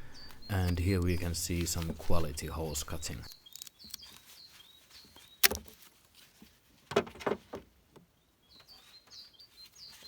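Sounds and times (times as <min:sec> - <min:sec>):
birds chirping faintly: 0:00.0 - 0:10.0
hose snapping: 0:05.4 - 0:05.8.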